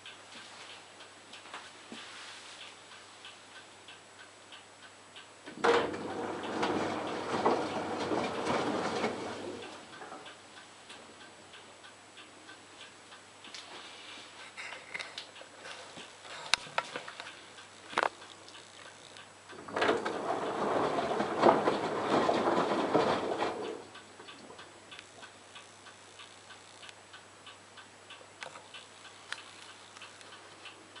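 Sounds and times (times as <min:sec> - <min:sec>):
washing machine sloshing: 0:05.6 - 0:09.8, 0:19.6 - 0:23.8
light clicking and ticking: 0:09.0 - 0:13.7, 0:14.6 - 0:21.4, 0:23.5 - 0:31.0.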